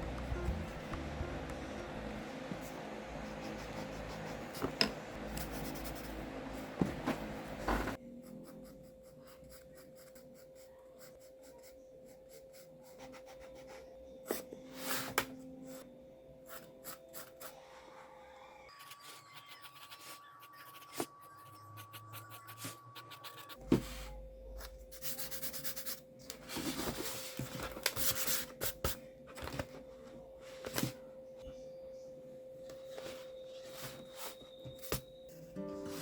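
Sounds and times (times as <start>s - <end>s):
pencil scratching on paper: 2.2s - 6.1s, 8.1s - 15.2s, 18.8s - 24.1s, 24.9s - 26.0s.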